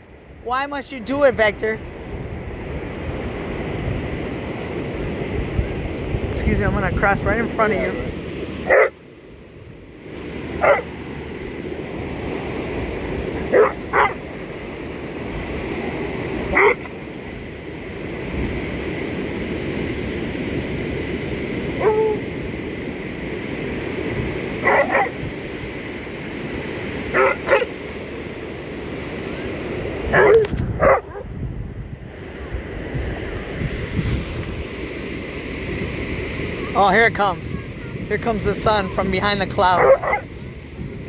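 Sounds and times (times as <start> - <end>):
ocean surf: 0.0 - 41.0
wind: 0.0 - 41.0
dog barking: 8.6 - 9.0, 10.6 - 11.0, 13.5 - 14.2, 16.5 - 16.9, 21.8 - 22.2, 24.6 - 25.2, 27.1 - 27.8, 30.1 - 31.3, 39.7 - 40.3.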